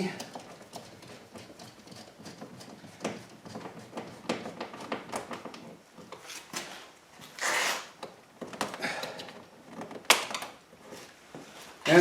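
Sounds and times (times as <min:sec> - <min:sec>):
scraping rustle: 0:00.2 - 0:08.0.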